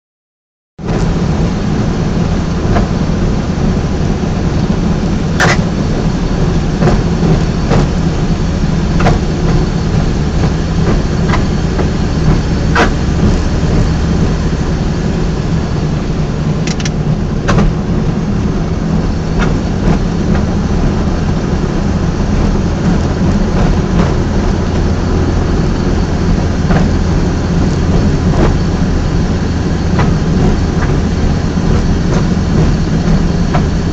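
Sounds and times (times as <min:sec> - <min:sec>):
car drivetrain running: 0:00.8 - 0:33.9
sharp clicks: 0:16.6 - 0:17.6.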